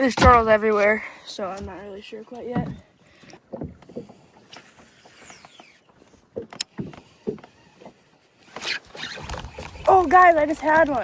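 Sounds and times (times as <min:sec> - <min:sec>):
fishing gear knocking and clicking: 0:06.4 - 0:11.0.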